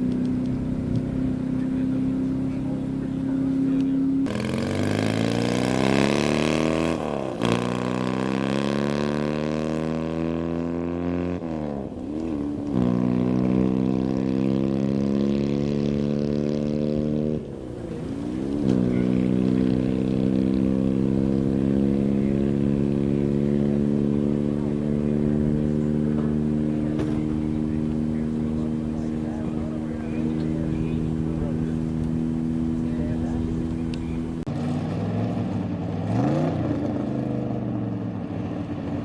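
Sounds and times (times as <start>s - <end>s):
racing engine accelerating: 0.0s - 39.0s.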